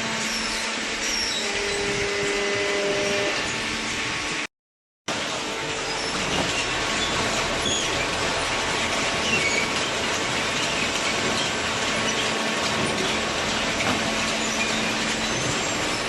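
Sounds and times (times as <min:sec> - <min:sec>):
baler mechanical din: 0:05.1 - 0:16.0.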